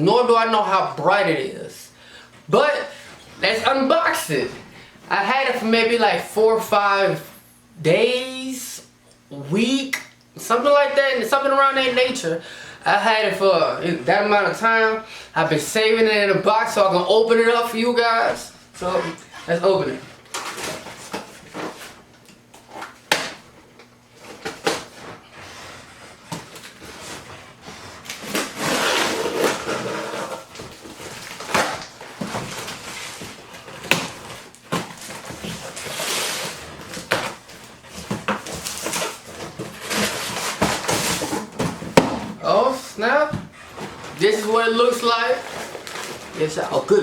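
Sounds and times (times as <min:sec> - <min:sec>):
packaging rustling and scraping: 0:17.4 - 0:47.0.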